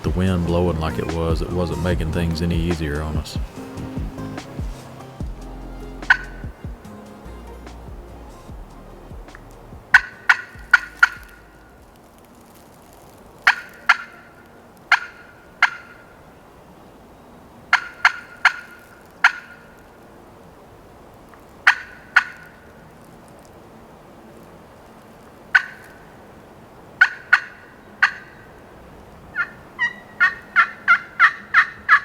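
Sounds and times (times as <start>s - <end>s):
turkey clucking: 0.0s - 11.8s, 13.4s - 16.2s, 17.7s - 20.0s, 21.6s - 22.7s, 27.0s - 28.6s, 29.3s - 32.0s.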